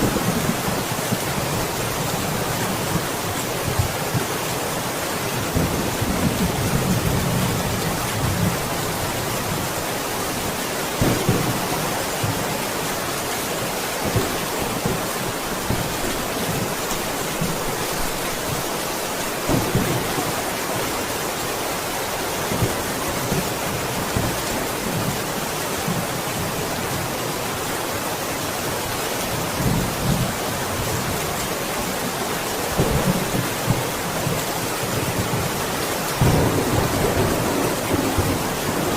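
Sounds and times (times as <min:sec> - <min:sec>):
dense rain falling: 0:00.0 - 0:38.9
thunder rumbling: 0:36.2 - 0:38.9.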